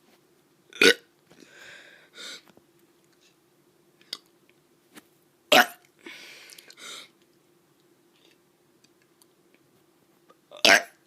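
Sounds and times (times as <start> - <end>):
child burping: 0.7 - 1.1
breathy huffs: 1.4 - 2.5.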